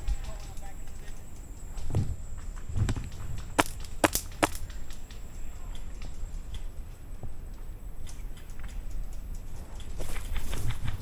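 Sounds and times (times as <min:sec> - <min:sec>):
airsoft gun shots: 0:03.6 - 0:04.6
dull knocks of gear: 0:03.6 - 0:04.7.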